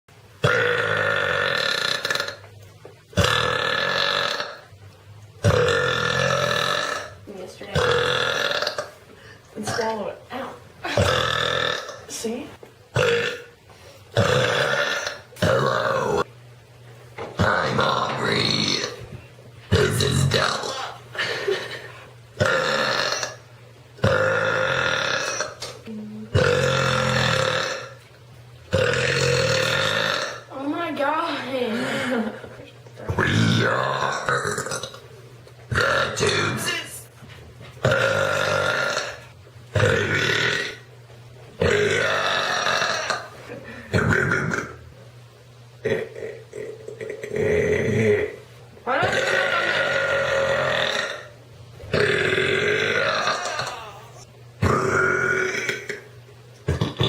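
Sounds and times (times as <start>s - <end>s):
woman belching: 0.4s - 2.5s, 3.2s - 4.7s, 5.4s - 9.0s, 10.8s - 12.3s, 13.0s - 13.5s, 14.2s - 16.3s, 17.4s - 19.0s, 19.7s - 21.8s, 22.4s - 28.0s, 28.7s - 30.6s, 31.6s - 35.0s, 35.7s - 36.9s, 37.8s - 40.9s, 41.6s - 43.3s, 43.9s - 44.8s, 45.8s - 56.1s, 56.7s - 57.0s.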